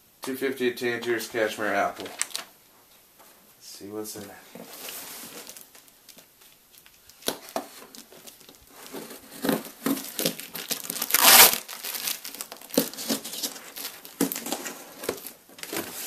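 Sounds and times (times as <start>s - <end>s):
packing material crinkling: 1.4s - 2.5s, 4.7s - 16.0s
loud tearing: 9.3s - 14.5s.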